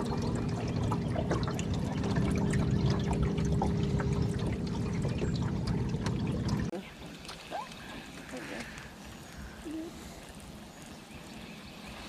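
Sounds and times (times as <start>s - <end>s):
boat motor humming: 0.0s - 7.7s
water splashing along hull: 0.0s - 12.0s.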